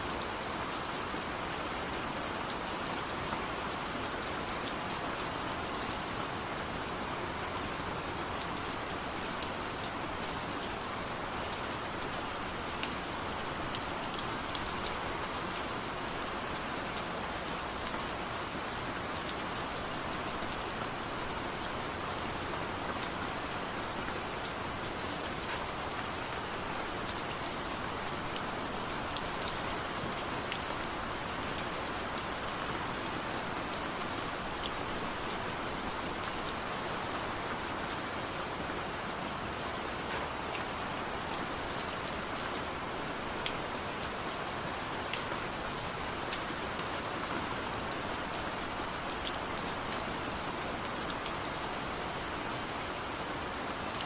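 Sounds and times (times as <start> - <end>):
steady rain: 0.0 - 54.0.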